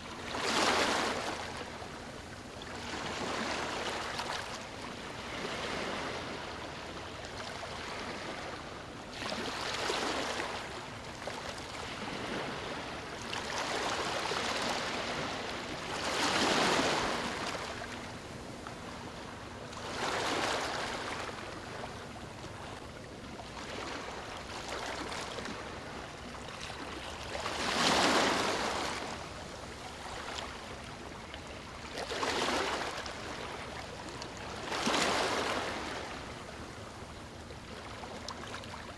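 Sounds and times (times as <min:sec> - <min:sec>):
ocean waves breaking: 0:11.8 - 0:18.1, 0:26.9 - 0:29.2.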